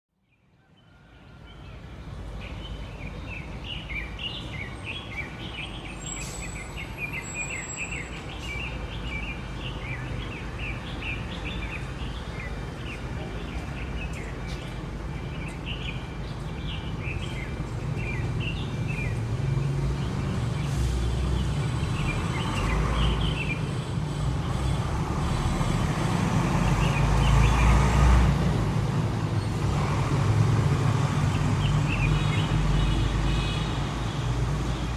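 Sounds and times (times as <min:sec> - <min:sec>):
birds chirping: 0:00.3 - 0:27.9
road traffic rumble: 0:00.6 - 0:34.9.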